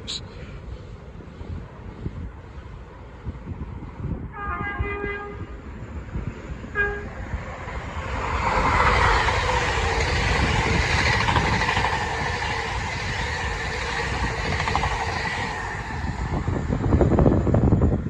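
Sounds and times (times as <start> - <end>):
train rushing past: 2.9 - 18.0
train horn blasts: 4.3 - 5.5, 6.7 - 7.2.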